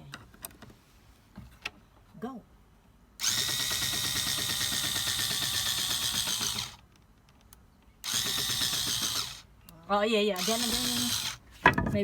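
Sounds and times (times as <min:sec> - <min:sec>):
electric drill running: 0:03.2 - 0:06.8, 0:08.0 - 0:09.5, 0:10.3 - 0:11.4.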